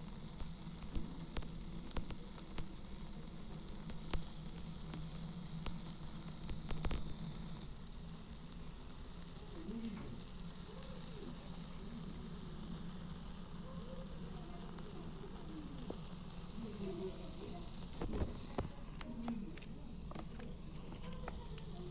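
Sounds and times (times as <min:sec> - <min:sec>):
food sizzling on a grill: 0:00.0 - 0:21.9
faint wavering sounds: 0:08.5 - 0:21.9
sharp pops: 0:12.0 - 0:21.8.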